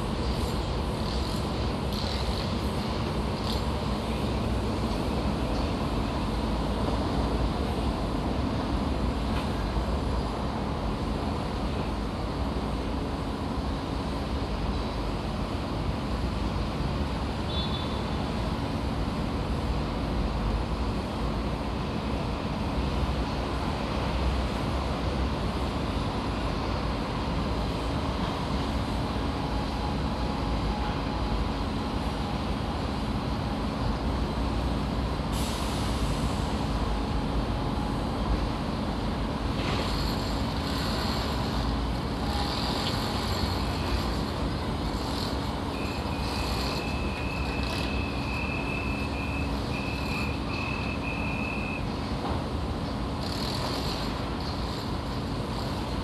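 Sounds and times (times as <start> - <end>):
hiss: 35.3 - 36.8.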